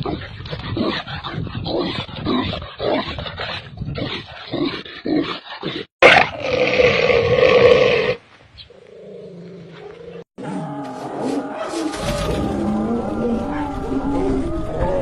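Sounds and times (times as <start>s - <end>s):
dog drawn-out howl: 10.4s - 15.0s.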